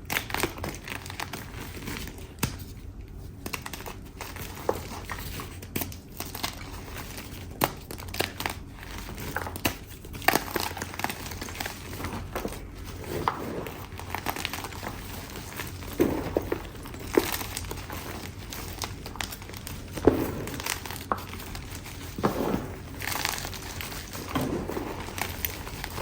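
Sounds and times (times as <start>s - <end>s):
chalk crunching: 10.4s - 26.0s.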